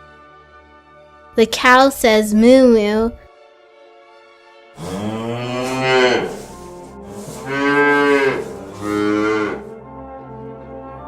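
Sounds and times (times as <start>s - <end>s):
cow mooing: 4.8s - 9.8s.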